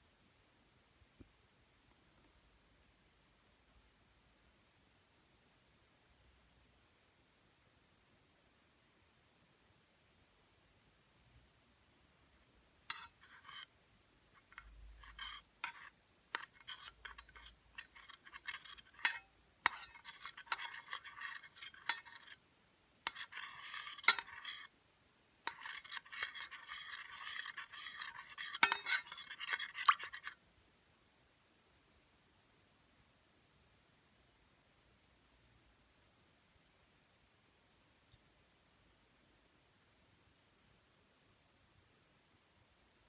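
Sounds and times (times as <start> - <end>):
utensils clinking and scraping: 12.9 - 13.6, 14.4 - 22.4, 23.1 - 24.7, 25.5 - 30.4.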